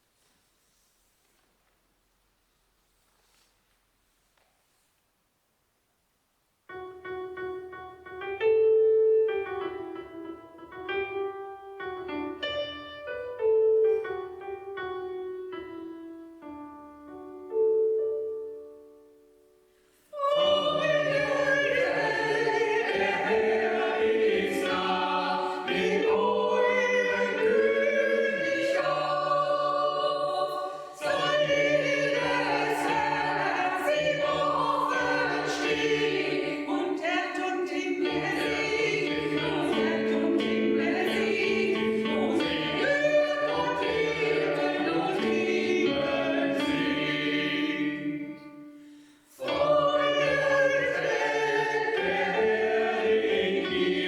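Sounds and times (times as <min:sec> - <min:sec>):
choir singing: 0:20.1 - 0:54.0.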